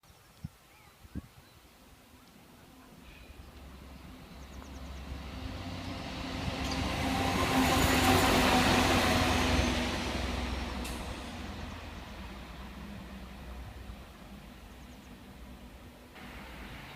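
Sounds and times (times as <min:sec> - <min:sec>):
rail vehicle engine hum: 0:02.3 - 0:16.9.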